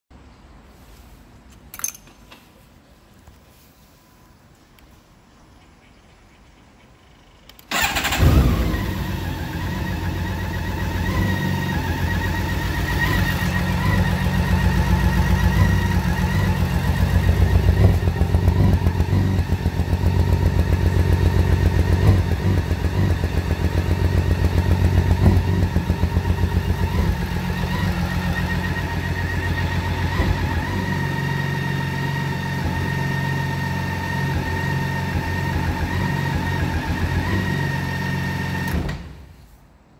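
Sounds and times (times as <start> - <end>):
motorcycle engine idling unevenly: 7.7 - 37.2.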